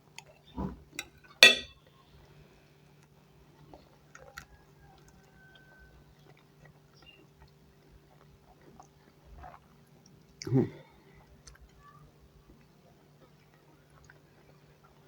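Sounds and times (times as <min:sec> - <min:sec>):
low steady hum: 0:01.4 - 0:01.7
faint chewing and mouth clicks: 0:03.0 - 0:15.0.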